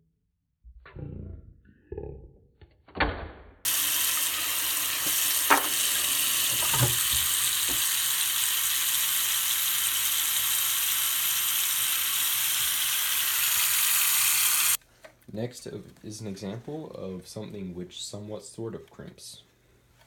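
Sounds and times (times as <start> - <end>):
loud steady hiss: 3.7 - 14.8.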